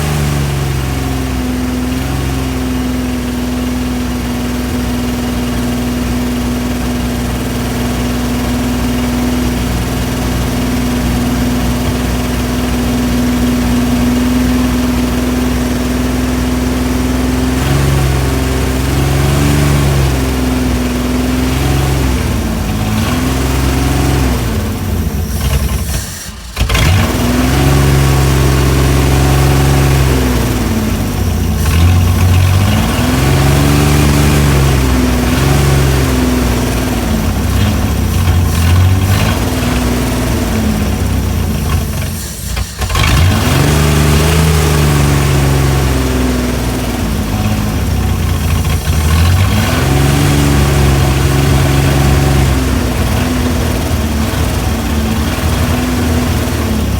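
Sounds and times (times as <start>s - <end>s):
car engine revving: 0.0s - 56.9s.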